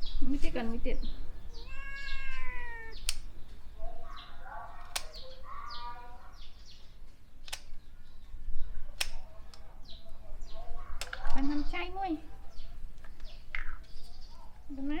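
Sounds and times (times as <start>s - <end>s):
small birds chirping: 0.0s - 15.0s
cat meowing: 1.4s - 3.1s
sharp clicks: 2.3s - 3.6s, 4.8s - 5.3s, 7.4s - 7.9s, 9.0s - 9.6s.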